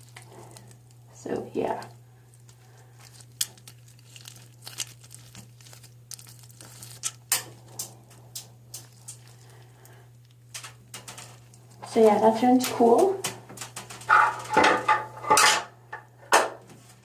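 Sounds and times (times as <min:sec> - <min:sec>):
bead slime crackling and popping: 0:02.4 - 0:11.7.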